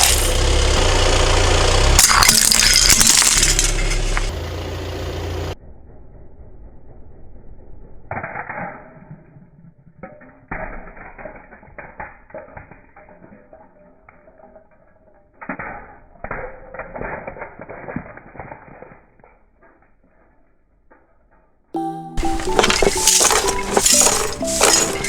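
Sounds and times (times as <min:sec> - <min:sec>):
tyre crushing brittle objects: 0:00.0 - 0:00.9, 0:02.0 - 0:04.4, 0:22.2 - 0:25.0
low engine rumble: 0:00.0 - 0:08.1.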